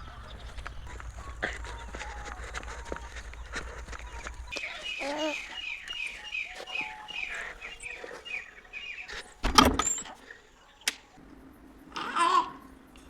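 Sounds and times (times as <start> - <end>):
bird chirping: 0.0 - 11.2.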